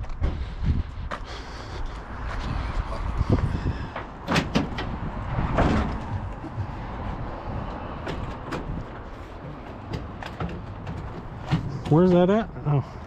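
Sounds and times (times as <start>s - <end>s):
steady low rumble: 0.0s - 13.0s
sharp clunks and knocks: 3.8s - 7.0s, 7.6s - 12.0s.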